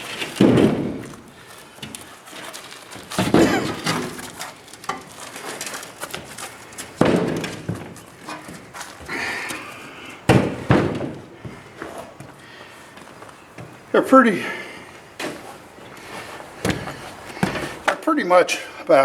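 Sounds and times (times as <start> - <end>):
heavy steel plates thudding: 0.0 - 1.4, 6.9 - 9.3, 16.6 - 18.0.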